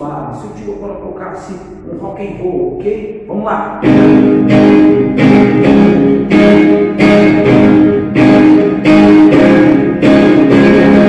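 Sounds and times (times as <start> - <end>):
electric guitar strumming rock chords: 3.8 - 11.0.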